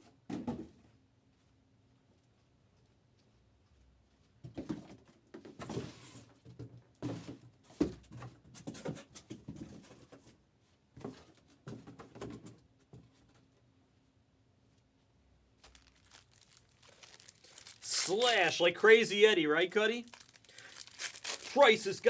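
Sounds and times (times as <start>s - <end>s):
packs rustling: 15.6s - 22.0s.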